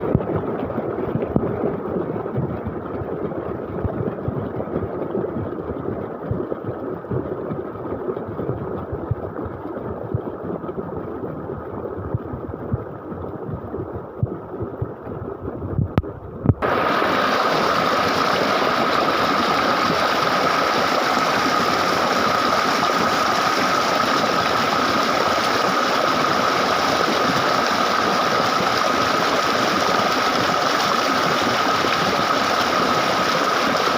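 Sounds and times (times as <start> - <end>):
water rushing: 16.5 - 33.9.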